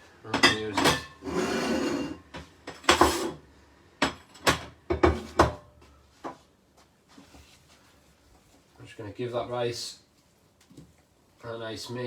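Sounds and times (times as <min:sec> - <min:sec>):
bowls and pans clinking: 0:00.3 - 0:03.4
crockery scraping: 0:00.5 - 0:02.3, 0:02.9 - 0:03.4.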